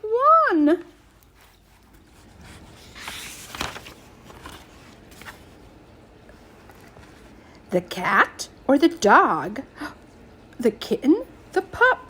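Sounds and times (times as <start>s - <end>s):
book page turning: 0.9s - 7.4s.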